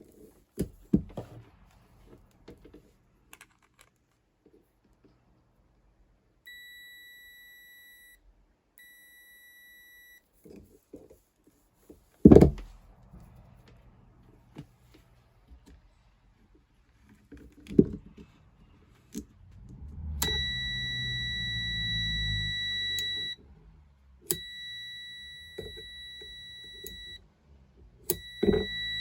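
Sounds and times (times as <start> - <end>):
dryer buzzer long beeps: 6.5 - 8.2, 8.8 - 10.2, 20.2 - 23.4, 24.3 - 27.2, 28.1 - 29.0
heavy thump: 12.2 - 12.8.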